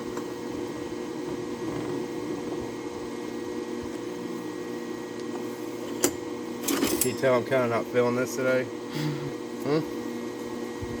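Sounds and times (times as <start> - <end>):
steady machine hum with hiss: 0.0 - 11.0.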